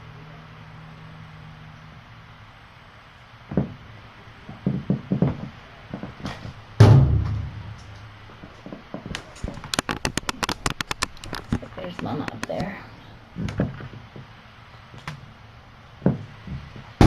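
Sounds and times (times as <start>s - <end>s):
knocks and thumps: 3.5s - 3.8s, 4.5s - 12.6s, 13.4s - 14.4s, 16.0s - 17.0s.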